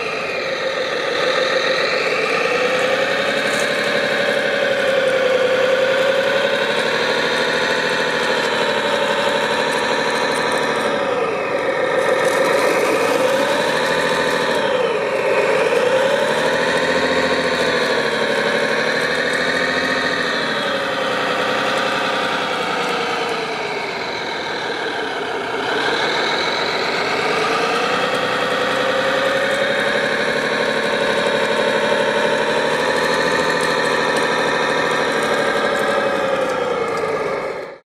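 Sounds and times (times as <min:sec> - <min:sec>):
toy machine motors whining: 0:08.1 - 0:37.7.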